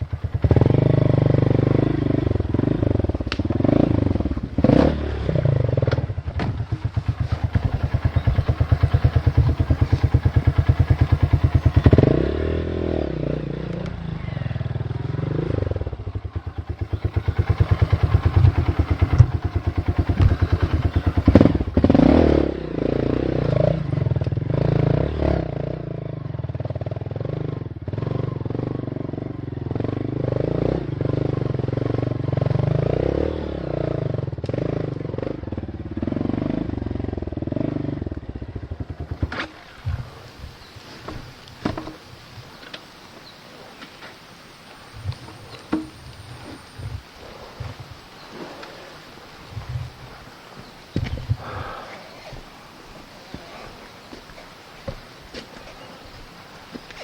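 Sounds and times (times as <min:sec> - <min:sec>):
motorcycle engine chugging: 0:00.0 - 0:57.0
clattering and knocks from bike: 0:41.0 - 0:42.8.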